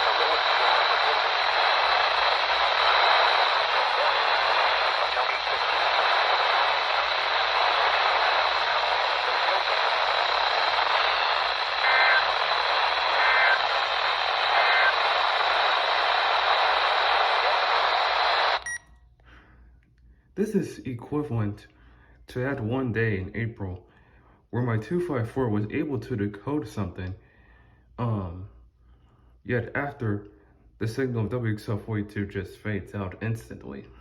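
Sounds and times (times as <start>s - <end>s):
radio static hiss: 0.0s - 18.8s.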